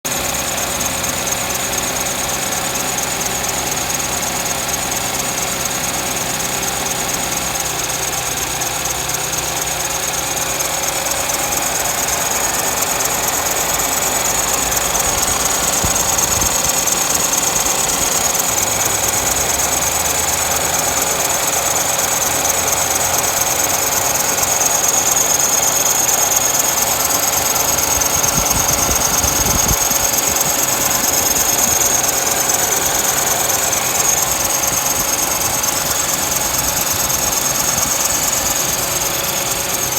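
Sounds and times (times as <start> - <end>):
car engine running: 0.1 - 39.9
drive belt squealing: 0.1 - 39.9.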